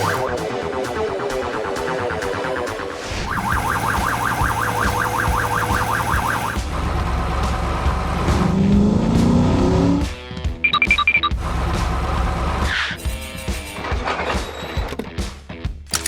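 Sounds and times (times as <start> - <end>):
cartoon siren wail: 3.1 - 6.6.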